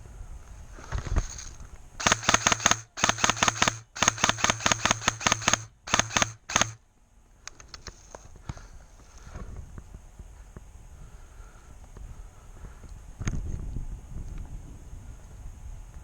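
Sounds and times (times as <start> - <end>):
gun motor hum: 0.9 - 6.8
airsoft gun firing bursts: 2.0 - 6.8.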